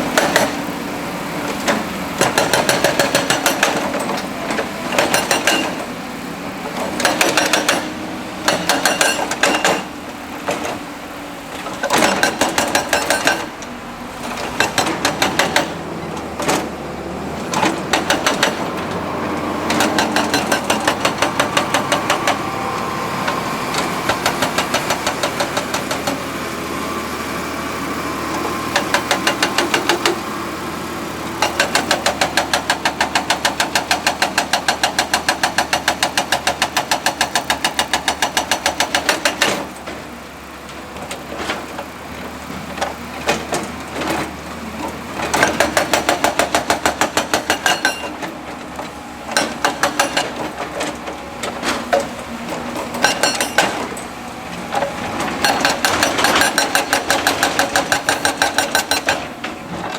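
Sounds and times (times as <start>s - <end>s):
diesel engine running: 0.0s - 59.9s
rapid percussive hammering: 14.6s - 15.8s, 17.8s - 18.7s, 19.7s - 22.4s, 52.9s - 53.9s, 55.4s - 59.2s.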